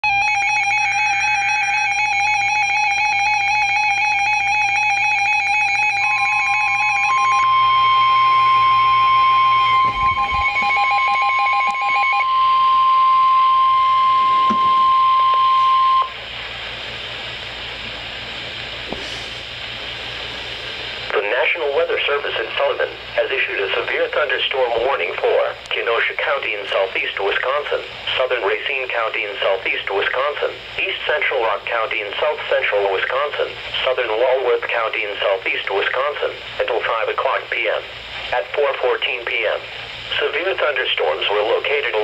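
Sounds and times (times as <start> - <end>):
warbling buzzer alarm: 0.0 - 16.2
steady warning tone: 0.0 - 42.0
radio static hiss: 12.7 - 42.0.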